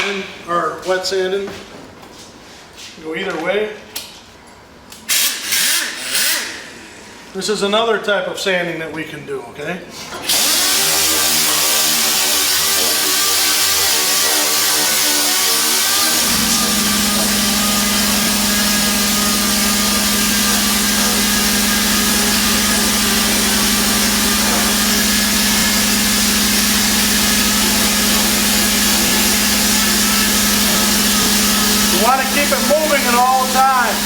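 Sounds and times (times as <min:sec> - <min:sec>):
orbital sander running: 0:10.3 - 0:34.0
steady low hum: 0:16.2 - 0:34.0.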